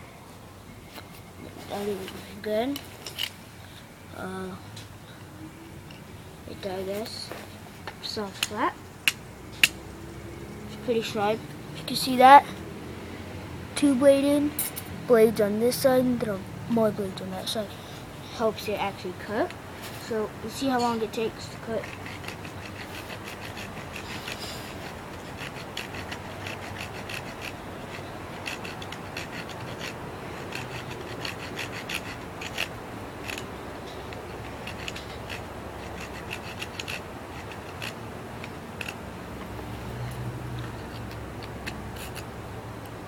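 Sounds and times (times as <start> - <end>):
small saw cutting wood: 20.5 - 39.0, 39.7 - 42.3.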